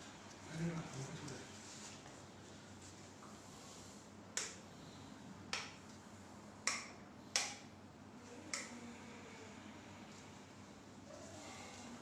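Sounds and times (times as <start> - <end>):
sharp snapping clicks: 4.4 - 4.6, 5.5 - 5.8, 6.6 - 7.7, 8.5 - 8.8.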